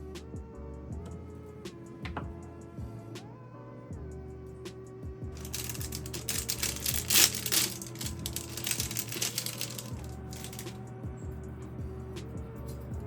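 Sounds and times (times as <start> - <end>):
background music: 0.0 - 13.0
crackling crinkling rustle: 5.4 - 10.8.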